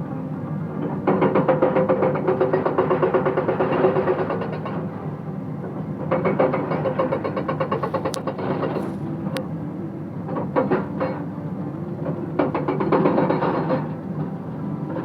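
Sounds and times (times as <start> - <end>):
diesel engine running: 7.0 - 15.0.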